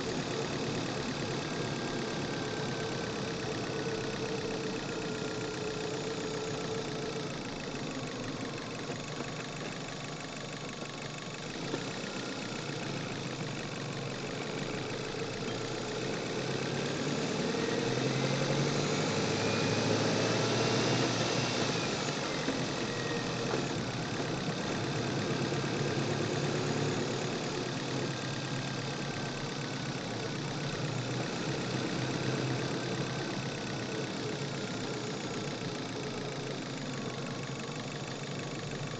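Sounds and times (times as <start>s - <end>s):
car engine revving: 15.9s - 29.3s.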